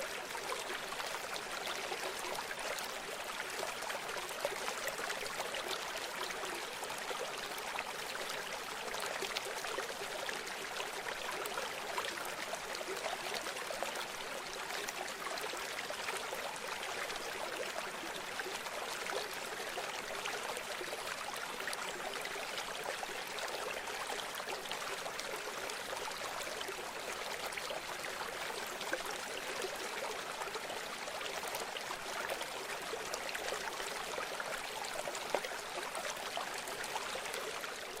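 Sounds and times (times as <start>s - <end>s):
river water flowing over stones: 0.0s - 38.0s.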